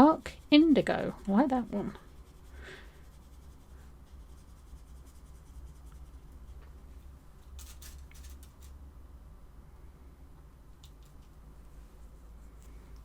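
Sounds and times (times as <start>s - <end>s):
pencil scribbling on paper: 0.0s - 6.6s
low steady hum: 0.0s - 13.0s.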